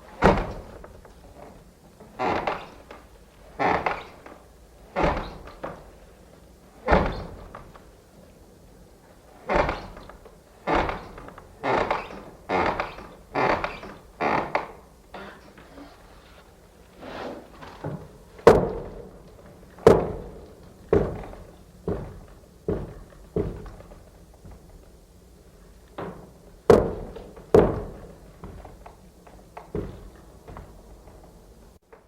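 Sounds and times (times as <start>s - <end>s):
door creak: 0.1s - 5.9s, 6.8s - 7.8s, 9.4s - 18.1s
wooden door banging: 0.2s - 1.0s, 2.1s - 6.0s, 6.8s - 7.8s, 9.4s - 15.5s, 17.7s - 24.8s, 26.0s - 28.9s, 29.5s - 31.3s.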